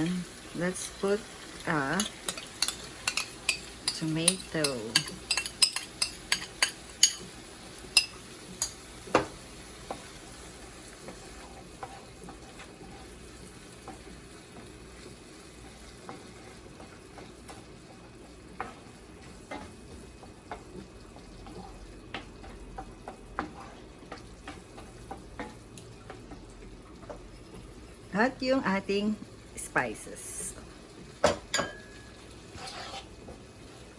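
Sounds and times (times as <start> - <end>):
sauce sizzling: 0.0 - 33.9
spoon clinking against pan: 2.0 - 7.3, 7.9 - 8.8, 31.5 - 32.2.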